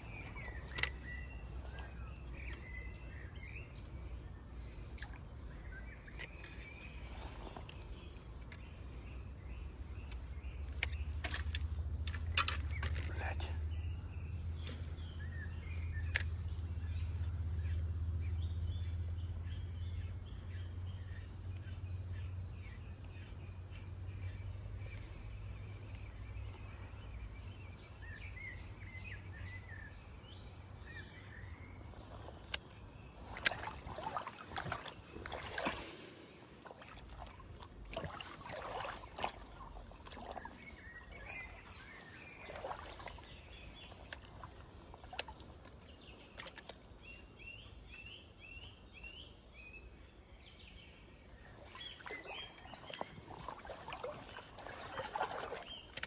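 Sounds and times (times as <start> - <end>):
small birds chirping: 0.0 - 56.0
water running: 33.2 - 46.6, 51.6 - 56.0.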